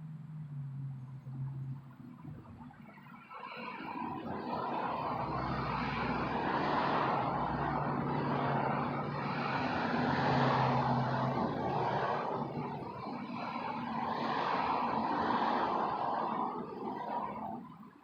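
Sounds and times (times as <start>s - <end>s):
passing vehicle engine hum: 0.0s - 17.6s.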